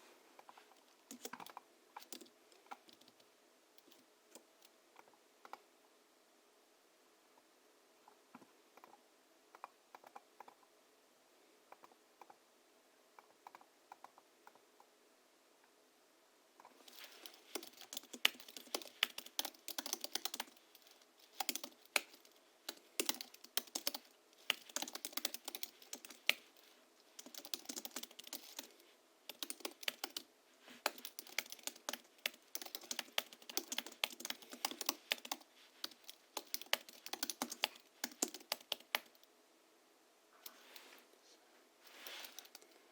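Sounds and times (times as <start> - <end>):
rapid keyboard keystrokes: 0.4 - 4.5, 16.8 - 39.3, 42.3 - 42.6.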